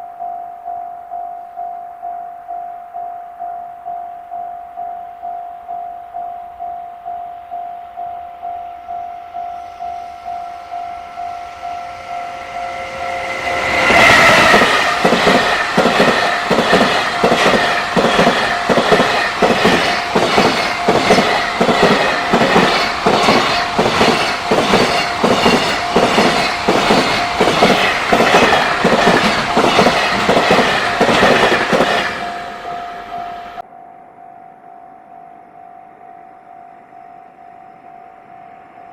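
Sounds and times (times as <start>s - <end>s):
level-crossing bell ringing: 0.0s - 38.9s
train passing rumble: 8.8s - 33.6s.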